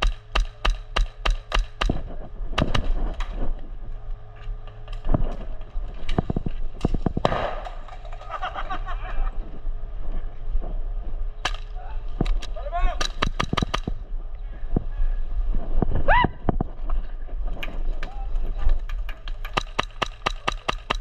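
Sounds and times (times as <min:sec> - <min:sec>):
airsoft guns firing: 0:00.0 - 0:03.2, 0:07.1 - 0:08.0, 0:13.0 - 0:14.0, 0:19.0 - 0:21.0.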